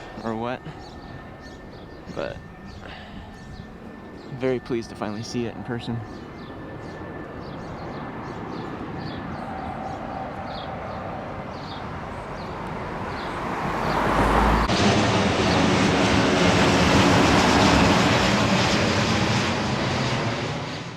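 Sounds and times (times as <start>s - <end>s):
small birds chirping: 0.0s - 14.7s
aircraft rumble passing: 0.0s - 20.9s.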